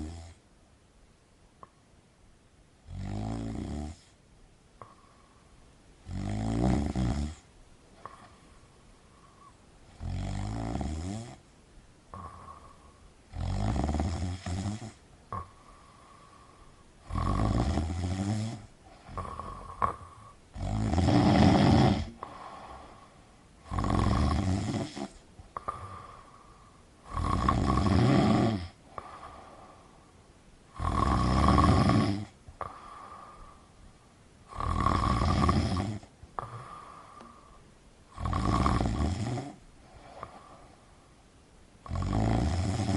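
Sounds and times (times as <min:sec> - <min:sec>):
person snoring: 0:02.8 - 0:04.2, 0:06.0 - 0:08.4, 0:09.2 - 0:11.4, 0:12.1 - 0:29.8, 0:30.7 - 0:33.7, 0:34.5 - 0:40.8, 0:41.8 - 0:42.9.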